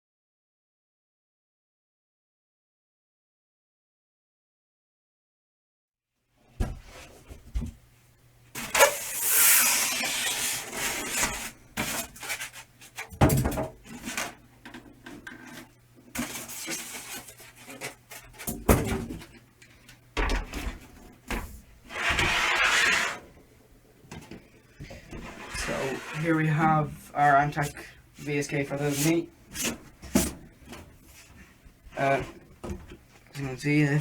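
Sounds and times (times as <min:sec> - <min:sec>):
knocks and thumps: 0:06.6 - 0:07.8, 0:32.2 - 0:33.0
packing material rustling and scraping: 0:08.6 - 0:13.1, 0:15.2 - 0:18.6, 0:25.1 - 0:27.8.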